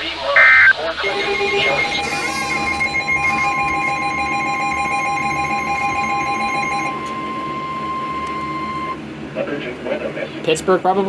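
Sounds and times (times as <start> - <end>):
electronic alert tone: 0.4 - 0.7.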